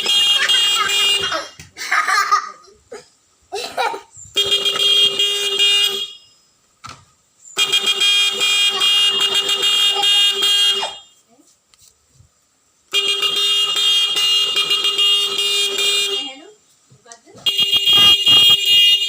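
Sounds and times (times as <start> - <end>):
electric horn blasts: 4.3 - 6.4, 7.6 - 11.2, 12.9 - 16.4, 17.5 - 19.0.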